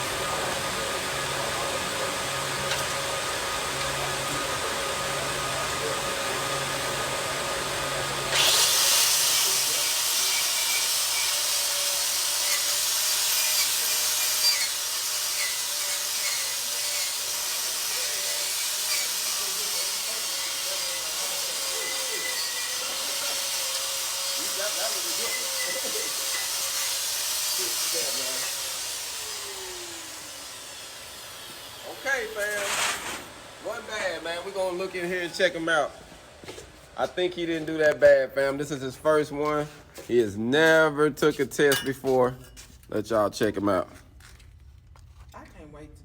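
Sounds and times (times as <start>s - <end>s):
welding arc crackling sizzle: 8.4s - 35.6s.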